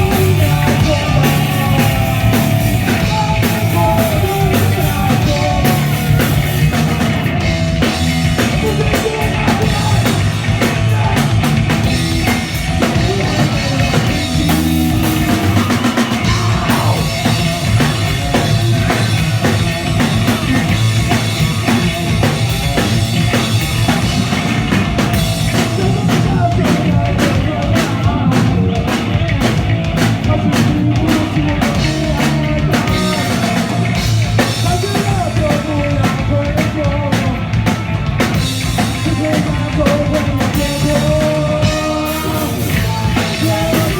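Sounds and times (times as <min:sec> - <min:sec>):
drum kit beat: 0:00.0 - 0:43.9
punk rock band playing live: 0:00.0 - 0:43.9.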